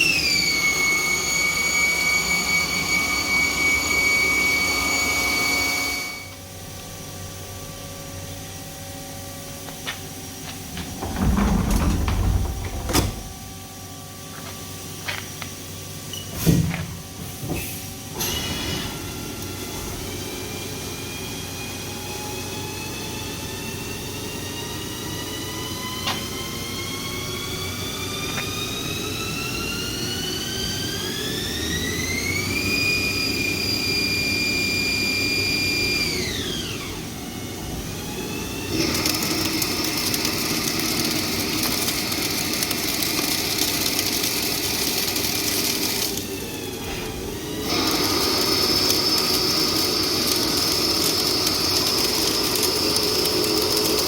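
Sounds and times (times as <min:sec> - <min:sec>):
lathe spindle whining: 0:00.0 - 0:06.4, 0:25.4 - 0:54.0.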